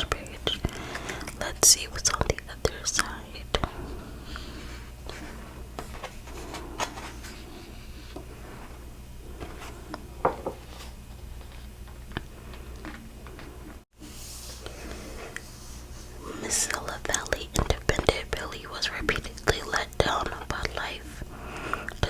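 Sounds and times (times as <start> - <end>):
book pages turning: 5.1 - 7.4.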